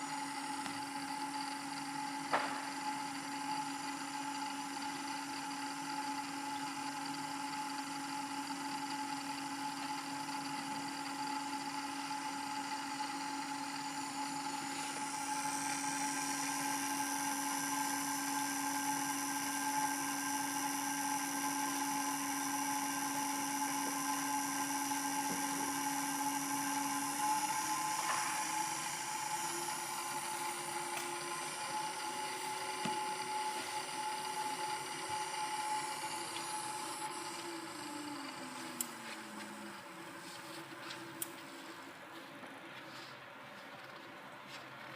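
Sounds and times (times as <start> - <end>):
servo motor whining: 9.2 - 41.9.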